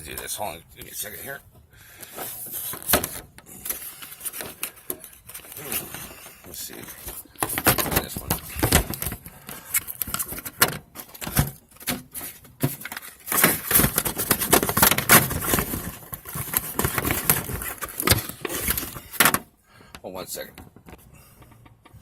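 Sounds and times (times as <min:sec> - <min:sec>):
handling rustling: 0:02.0 - 0:19.4.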